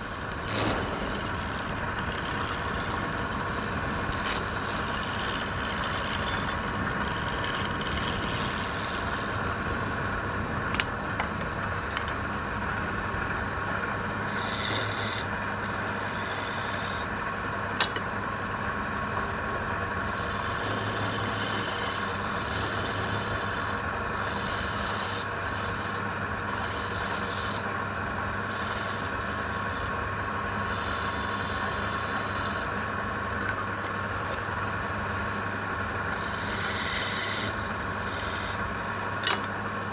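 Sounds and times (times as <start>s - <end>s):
wood rubbing or rasping: 0.0s - 10.0s, 14.2s - 17.1s, 20.0s - 27.7s, 28.4s - 32.8s, 36.1s - 38.6s
machine humming: 0.0s - 18.6s, 19.2s - 39.9s.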